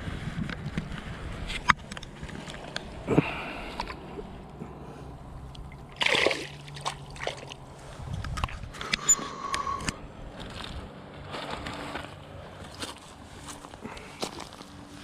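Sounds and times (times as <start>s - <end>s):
pond water splashing: 5.4s - 8.8s.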